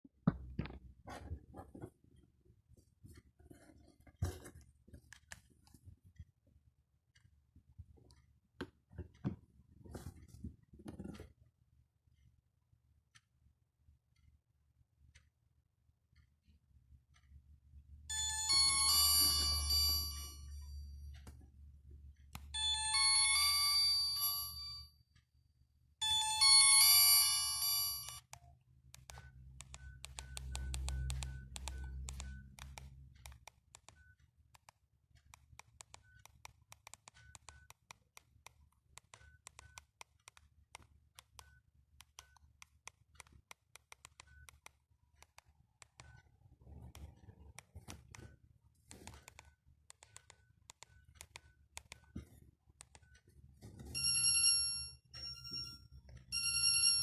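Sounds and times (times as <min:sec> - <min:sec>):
electronic ringtone melody: 0:18.1 - 0:21.0, 0:22.6 - 0:24.9, 0:26.0 - 0:28.3, 0:54.0 - 0:57.0.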